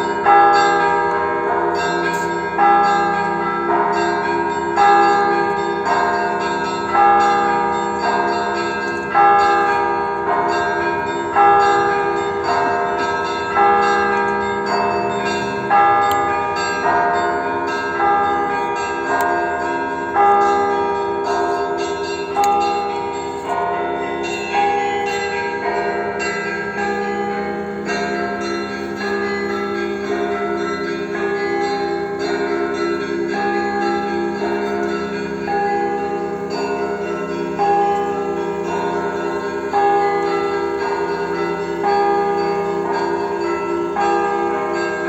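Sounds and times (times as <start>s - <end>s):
smaller bells chiming: 0.0s - 45.0s
large bell struck with deep hum: 10.5s - 19.4s.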